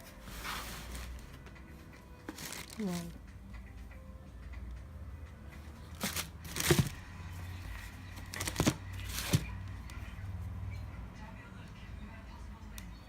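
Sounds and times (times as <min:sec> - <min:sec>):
shoe box and paper rustling: 0:00.0 - 0:01.4, 0:02.3 - 0:03.2, 0:06.0 - 0:07.1, 0:07.8 - 0:09.7.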